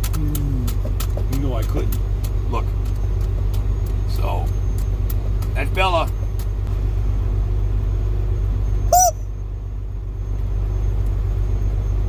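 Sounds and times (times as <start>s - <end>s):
engine idling low rumble: 0.0s - 12.0s
dog whining: 9.0s - 9.2s.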